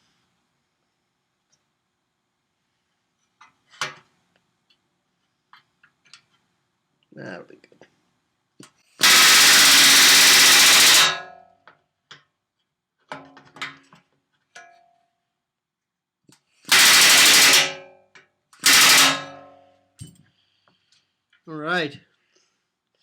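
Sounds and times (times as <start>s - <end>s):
pneumatic rivet gun hammering: 9.0s - 11.2s, 16.7s - 17.7s, 18.6s - 19.4s.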